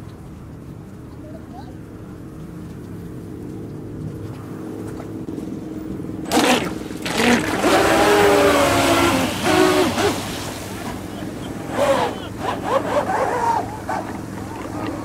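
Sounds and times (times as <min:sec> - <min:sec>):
model boat motor whine: 0:05.1 - 0:15.0
water spray rushing: 0:06.3 - 0:15.0.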